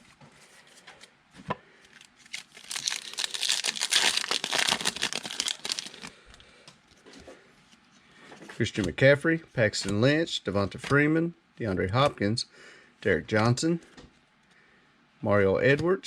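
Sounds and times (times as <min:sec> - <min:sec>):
wrapper crinkling and tearing: 0:01.9 - 0:06.4.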